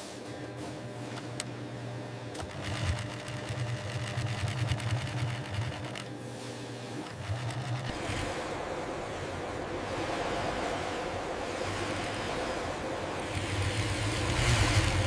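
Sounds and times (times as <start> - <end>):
sewing machine stitching leather: 2.4 - 6.1, 7.0 - 8.2, 13.3 - 15.0.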